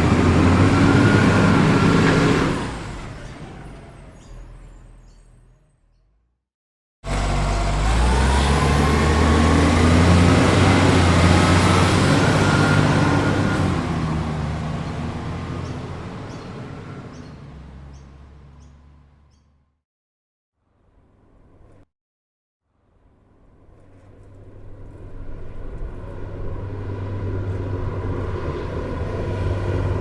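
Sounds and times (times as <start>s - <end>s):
truck engine running: 0.0s - 4.3s, 7.0s - 19.4s.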